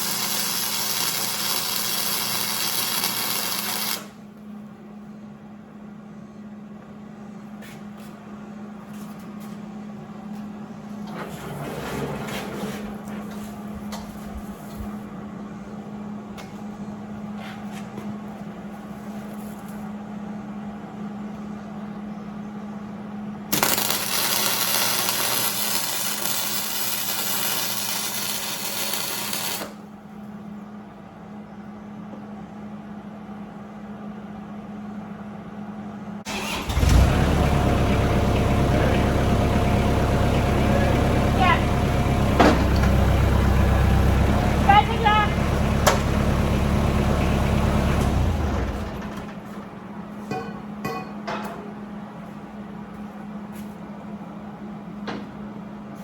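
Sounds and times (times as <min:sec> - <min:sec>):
engine starting and running: 0:10.9 - 0:13.4, 0:23.5 - 0:29.8, 0:36.2 - 0:49.8.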